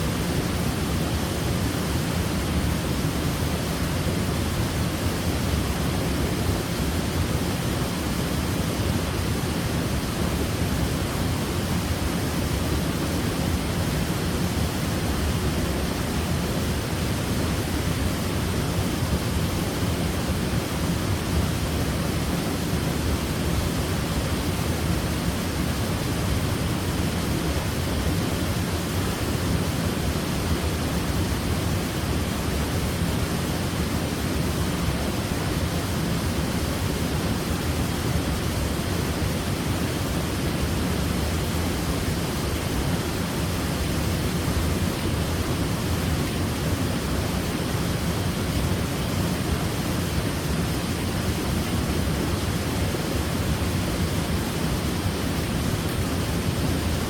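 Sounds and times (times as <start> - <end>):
waterfall rushing: 0.0 - 57.0.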